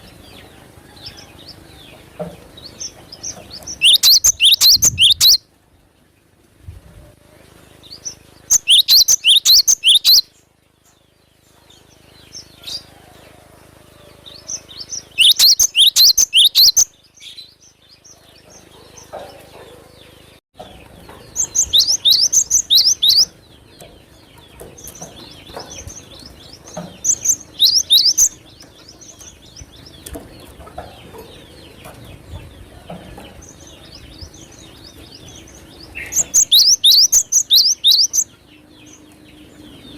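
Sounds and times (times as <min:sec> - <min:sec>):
bird singing rapid high notes: 0:03.7 - 0:05.4, 0:07.9 - 0:10.4, 0:14.6 - 0:17.6, 0:21.3 - 0:23.4, 0:25.8 - 0:28.5, 0:35.4 - 0:39.0
quiet bird chirps: 0:07.3 - 0:13.0, 0:14.2 - 0:20.0.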